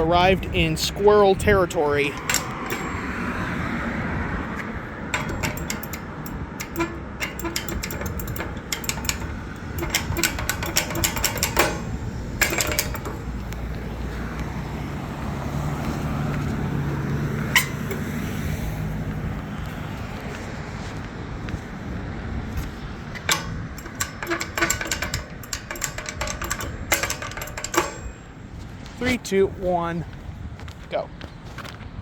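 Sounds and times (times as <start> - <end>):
vehicle engine humming: 0.0 - 30.6
street traffic: 0.0 - 32.0
crosswalk push button clicking: 2.1 - 3.6, 4.4 - 14.5, 16.3 - 18.6, 23.2 - 28.2.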